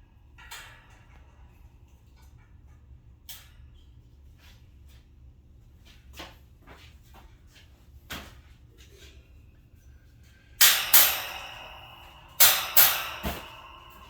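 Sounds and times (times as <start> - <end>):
knocks on metal shelf: 10.6 - 14.0.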